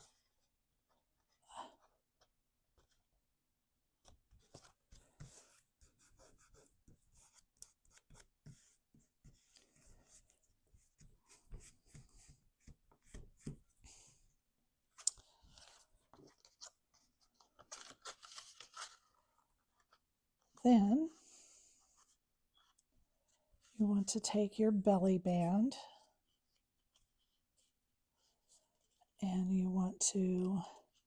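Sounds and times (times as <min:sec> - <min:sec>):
cardstock rustling and scraping: 0:15.4 - 0:20.1.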